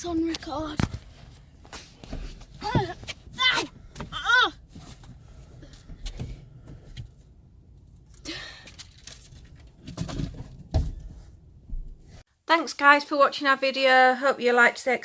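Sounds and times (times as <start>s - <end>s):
soft knocks and rustles: 9.2s - 12.2s.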